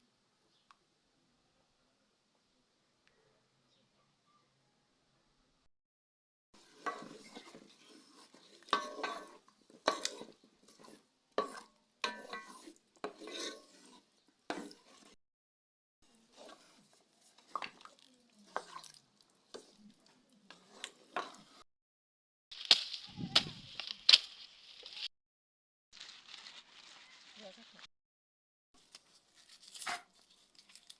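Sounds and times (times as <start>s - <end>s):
pots and utensils clinking: 6.6s - 15.2s, 20.5s - 21.6s
utensils scraping: 6.6s - 15.2s.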